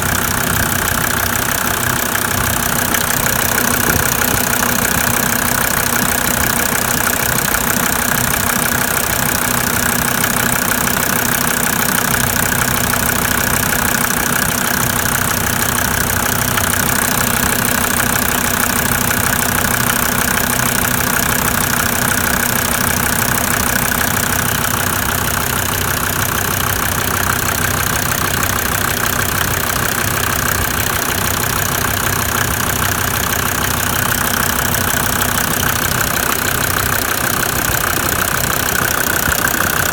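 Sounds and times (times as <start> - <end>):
diesel engine idling roughly: 0.0 - 39.9
engine knocking: 0.0 - 39.9.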